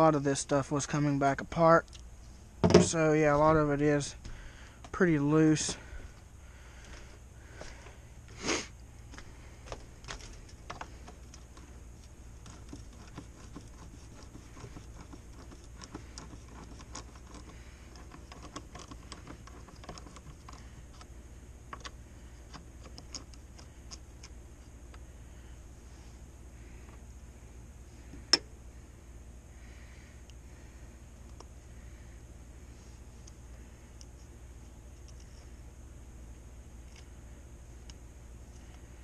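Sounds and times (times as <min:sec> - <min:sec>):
steady low hum: 0:00.0 - 0:39.0
hand tools clicking and tapping: 0:12.4 - 0:21.1.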